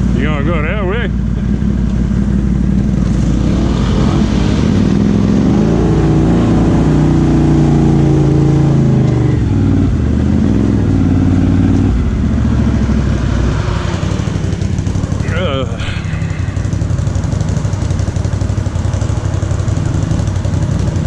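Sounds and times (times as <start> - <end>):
engine revving hard: 3.0 - 17.2.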